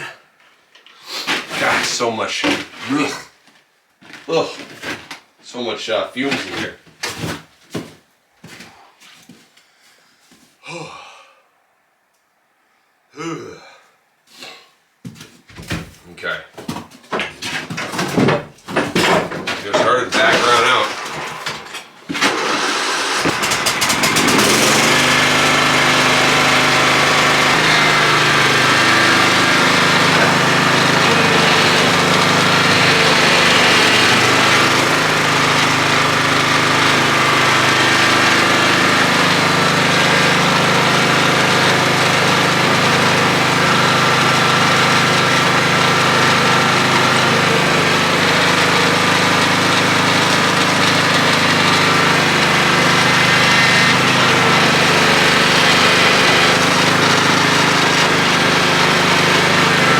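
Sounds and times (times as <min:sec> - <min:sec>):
lawn tractor engine starting: 0:01.3 - 0:02.1, 0:17.4 - 0:59.9.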